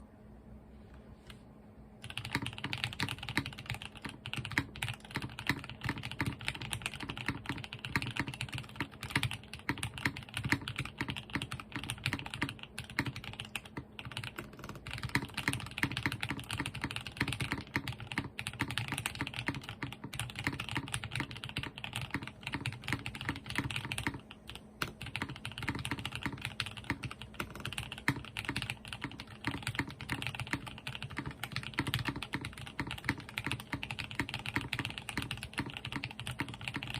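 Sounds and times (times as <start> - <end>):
mechanical keyboard typing: 2.0 - 36.9.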